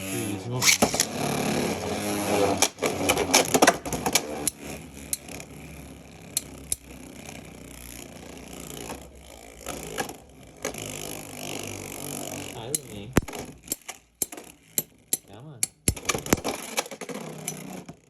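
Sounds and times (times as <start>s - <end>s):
spinning tops clashing: 0.6s - 1.2s
spinning tops rattling on plastic: 0.6s - 18.0s.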